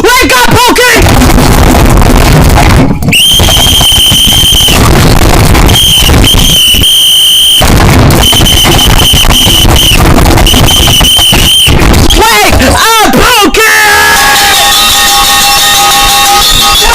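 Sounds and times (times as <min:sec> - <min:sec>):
shrill distorted whistle tone: 0:03.1 - 0:04.9, 0:05.6 - 0:11.9, 0:13.8 - 0:16.9.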